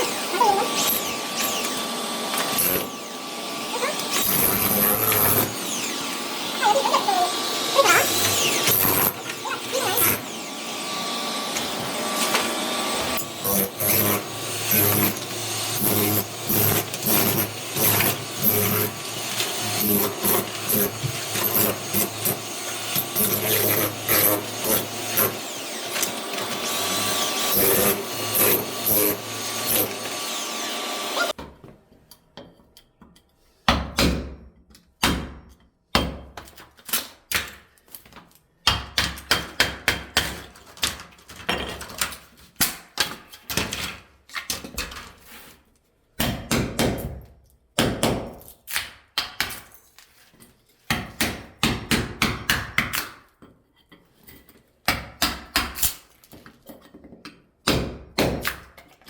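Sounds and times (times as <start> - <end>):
tool scraping wooden floorboards: 0.0 - 31.3.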